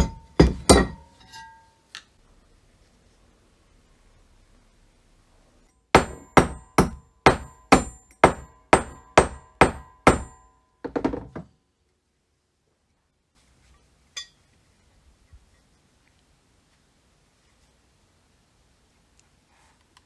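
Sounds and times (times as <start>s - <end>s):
hammer blows on metal: 6.0s - 10.4s.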